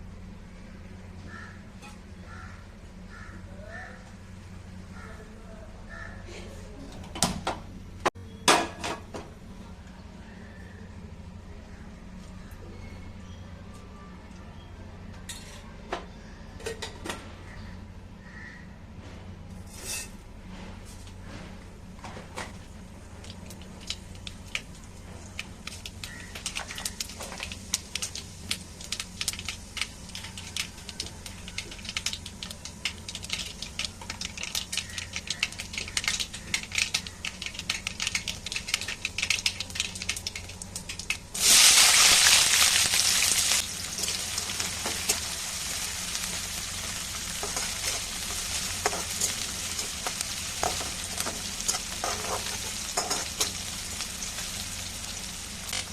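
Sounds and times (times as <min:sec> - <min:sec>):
hot oil crackling and popping: 0:22.4 - 0:55.9
food sizzling in oil: 0:25.2 - 0:55.9
stirring in a pan: 0:42.3 - 0:55.9.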